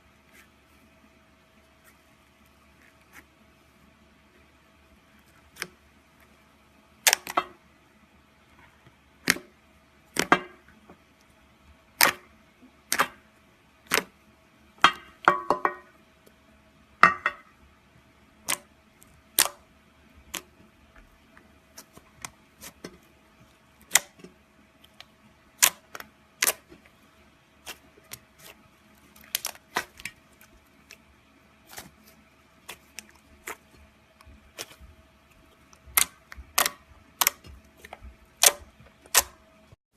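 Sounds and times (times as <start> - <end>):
slime clicking and popping: 12.9 - 13.2, 13.8 - 14.1, 25.6 - 26.7, 35.8 - 39.3.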